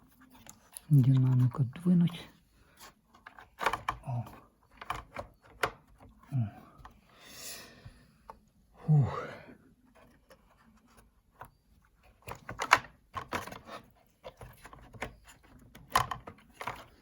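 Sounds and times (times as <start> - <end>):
small computer parts clicking and tapping: 3.1 - 6.1, 14.2 - 17.0.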